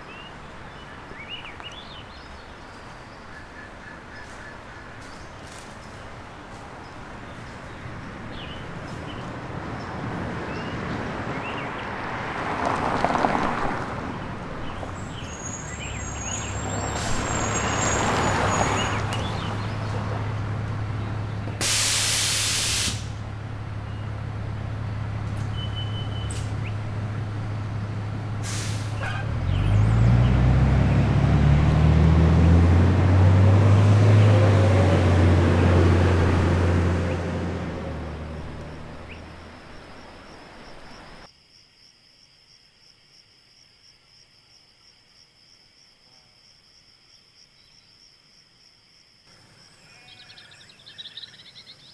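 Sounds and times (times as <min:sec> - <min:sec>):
vehicles passing: 0:00.0 - 0:41.3
engine humming: 0:01.5 - 0:41.3
engine revving and pulling away: 0:05.0 - 0:41.3
loud hiss burst: 0:21.6 - 0:23.3, 0:28.4 - 0:29.0.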